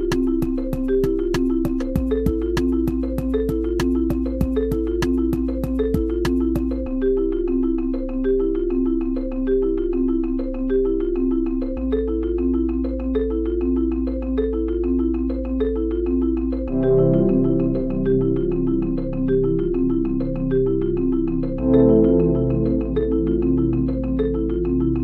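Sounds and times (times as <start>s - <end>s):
melody of short struck notes: 16.7s - 19.3s, 21.6s - 25.0s
low bass tone: 16.7s - 25.0s.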